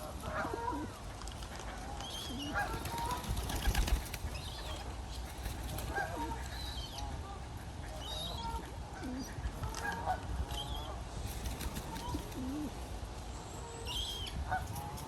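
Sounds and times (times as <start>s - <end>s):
bird wings flapping: 2.5s - 6.4s, 11.2s - 12.8s.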